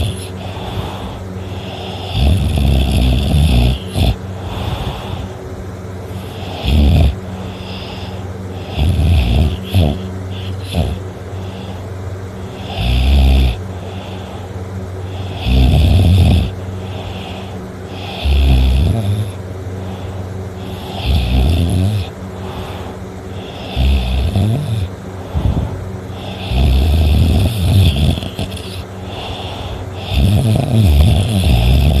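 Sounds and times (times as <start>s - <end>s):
person snoring: 0.0s - 5.4s, 6.0s - 32.0s
steady low hum: 0.0s - 32.0s.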